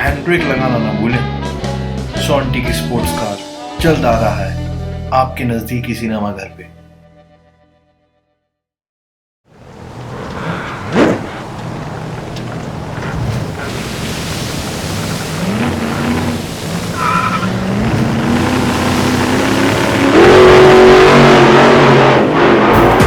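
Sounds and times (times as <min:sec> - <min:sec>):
sports car engine revving: 0:09.6 - 0:23.0.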